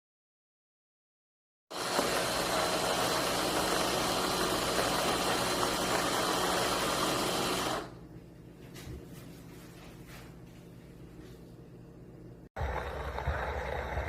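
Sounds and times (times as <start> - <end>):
electric coffee grinder whirring: 1.7 - 8.0, 12.6 - 14.0.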